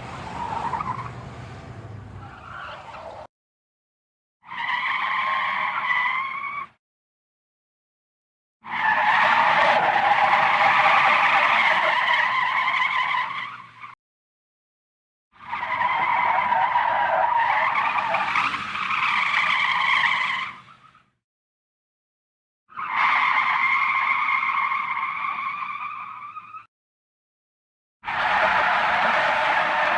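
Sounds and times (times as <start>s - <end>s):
car tyres skidding: 0.0s - 3.3s, 4.5s - 6.7s, 8.7s - 14.0s, 15.4s - 21.0s, 22.7s - 26.6s, 28.1s - 29.9s.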